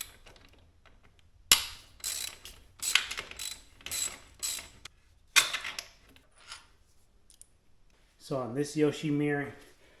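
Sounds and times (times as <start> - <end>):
socket ratchet clicking: 1.5 - 4.8.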